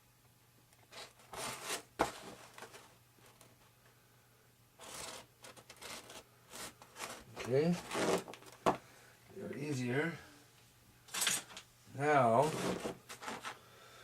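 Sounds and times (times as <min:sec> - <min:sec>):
blade scraping foam: 0:04.8 - 0:08.4, 0:12.3 - 0:13.5.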